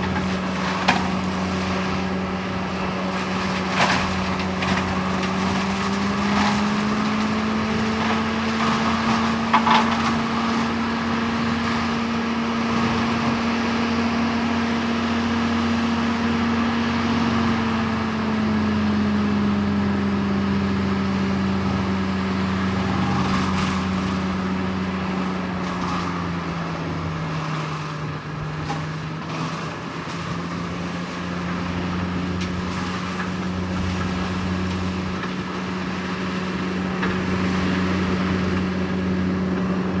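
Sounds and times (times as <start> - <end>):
diesel engine running hard: 0.0 - 40.0
forestry mulcher working: 0.0 - 40.0.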